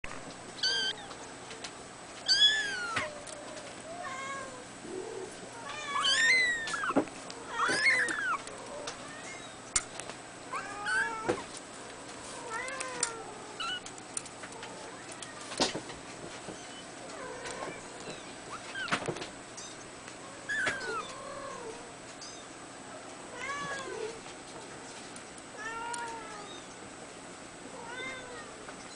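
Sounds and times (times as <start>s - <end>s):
kitten mewing: 0.6s - 1.2s.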